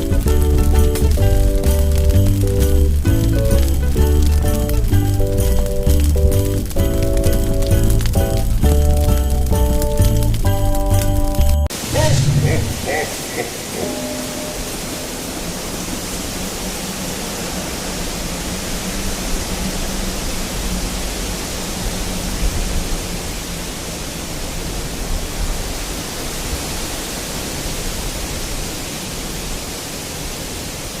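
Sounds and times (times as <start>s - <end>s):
fire popping: 0.0s - 14.2s
fire hissing and rumbling: 0.0s - 29.1s.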